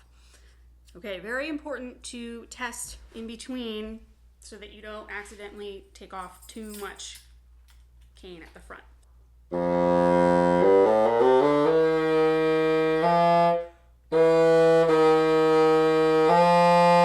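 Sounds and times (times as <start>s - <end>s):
player breath: 0.0s - 0.8s
bassoon notes: 9.5s - 17.0s.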